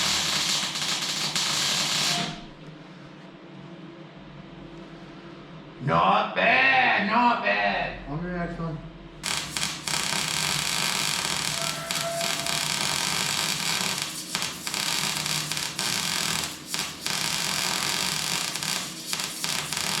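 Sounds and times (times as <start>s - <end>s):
welding arc crackling and hissing: 0.0s - 2.5s, 9.2s - 20.0s.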